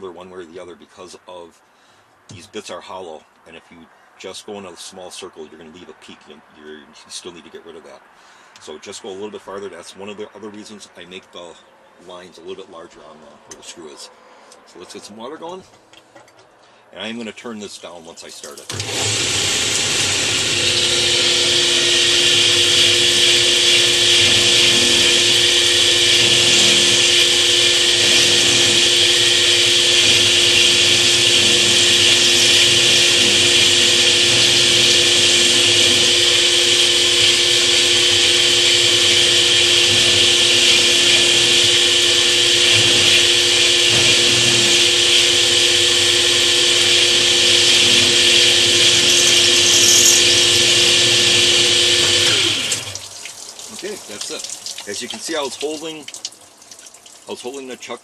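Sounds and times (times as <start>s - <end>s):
power tool grinding stone: 18.6s - 53.1s.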